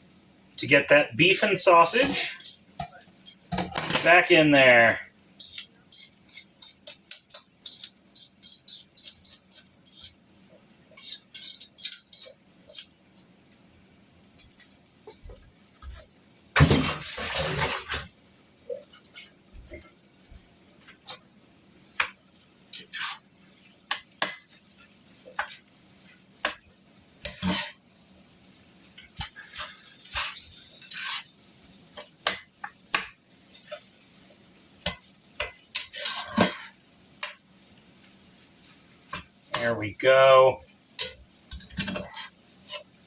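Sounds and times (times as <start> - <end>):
steady high hiss: 0.0 - 43.0
metal utensil scraping a frying pan: 5.4 - 10.2, 11.0 - 13.0, 22.0 - 26.6, 27.2 - 27.8, 29.0 - 34.0, 34.8 - 37.3, 41.0 - 43.0.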